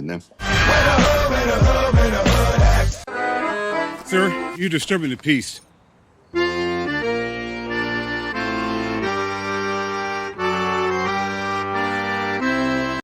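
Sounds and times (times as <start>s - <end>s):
accordion playing chords: 2.2s - 4.7s, 6.4s - 13.0s.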